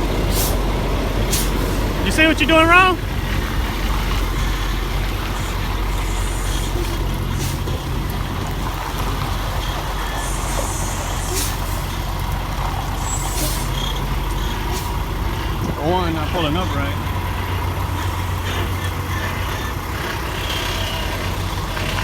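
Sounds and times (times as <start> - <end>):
diesel truck engine running: 0.0 - 22.0
air brake hisses: 0.3 - 0.6, 1.3 - 2.0, 5.3 - 7.8, 9.9 - 12.1, 12.8 - 15.1.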